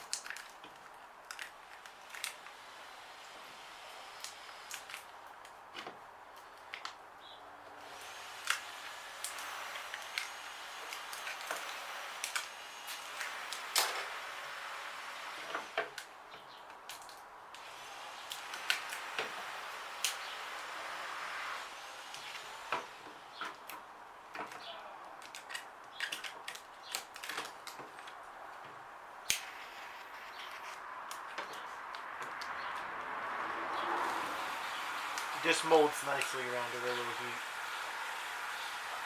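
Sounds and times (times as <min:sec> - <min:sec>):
film clicking and rubbing on plastic: 0:00.0 - 0:02.6, 0:23.4 - 0:28.7, 0:29.3 - 0:32.9.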